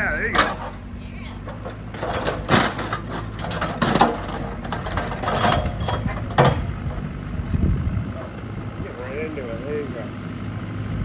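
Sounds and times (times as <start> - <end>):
bucket crunching into metal: 0.0 - 8.7
excavator engine running: 0.0 - 11.0
sharp metal clangs: 0.2 - 7.4.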